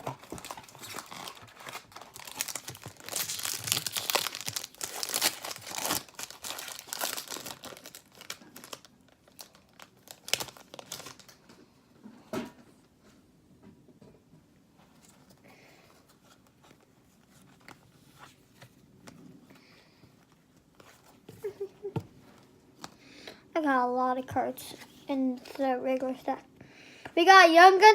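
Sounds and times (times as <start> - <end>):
card pack wrapper tearing and crinkling: 0.0 - 11.4.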